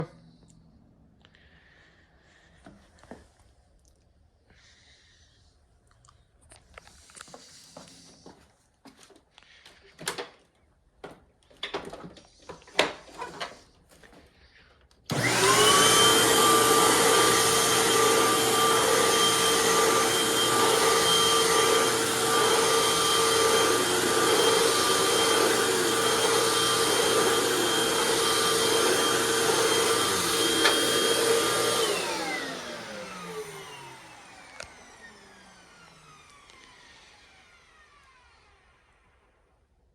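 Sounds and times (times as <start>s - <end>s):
vacuum cleaner whining: 11.0s - 14.4s, 15.0s - 39.4s.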